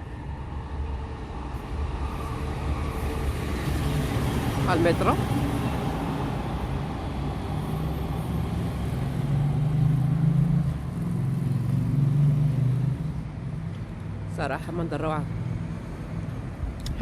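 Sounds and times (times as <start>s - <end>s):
train passing rumble: 0.0s - 17.0s.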